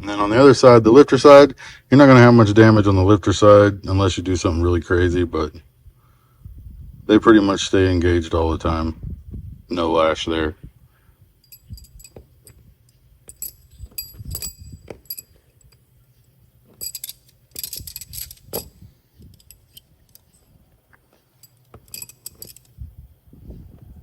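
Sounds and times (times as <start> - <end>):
metal rods clinking: 11.4 - 20.6, 21.2 - 22.8.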